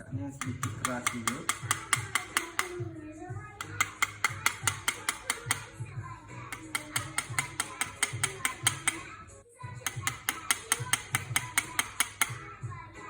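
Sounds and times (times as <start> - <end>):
knife tapping eggshell: 0.4 - 2.9, 3.6 - 5.8, 6.5 - 9.1, 9.8 - 12.4.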